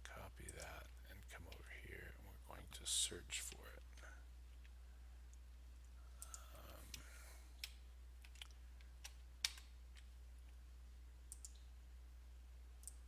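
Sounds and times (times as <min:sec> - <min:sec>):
low steady hum: 0:00.0 - 0:13.0
computer mouse and keyboard clicks: 0:06.2 - 0:10.1, 0:11.3 - 0:11.7, 0:12.8 - 0:13.0.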